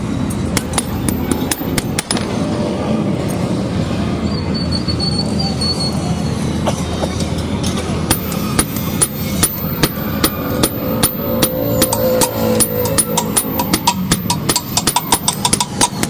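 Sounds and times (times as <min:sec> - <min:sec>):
steady low rumble: 0:00.0 - 0:04.6, 0:06.3 - 0:16.0
hammer striking metal on anvil: 0:00.5 - 0:02.5, 0:08.1 - 0:16.0.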